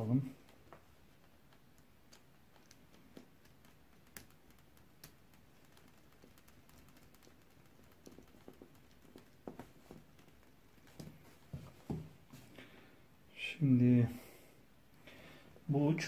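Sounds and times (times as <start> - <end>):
small clicks from handling wires: 0.4 - 11.5.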